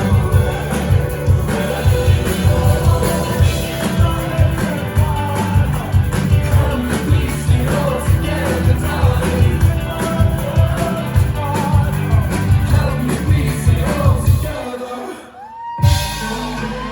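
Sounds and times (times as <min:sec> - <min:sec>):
driving drum and bass beat: 0:00.0 - 0:14.6, 0:15.8 - 0:16.9
live pop-rock band playing: 0:00.0 - 0:14.6, 0:15.8 - 0:16.9
person singing: 0:00.0 - 0:16.9.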